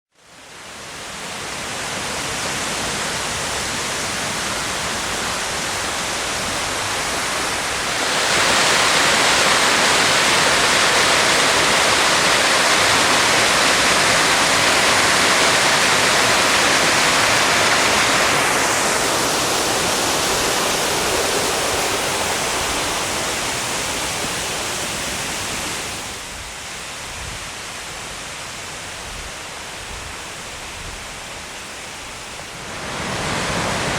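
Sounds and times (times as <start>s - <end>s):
waterfall rushing: 0.3s - 27.0s, 31.2s - 33.9s.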